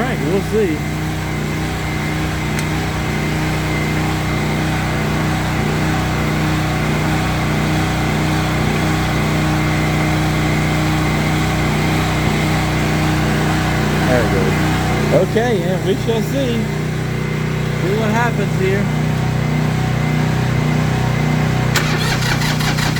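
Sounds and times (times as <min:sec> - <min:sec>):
hair dryer whining drone: 0:00.0 - 0:21.8
engine cranking: 0:21.7 - 0:22.9.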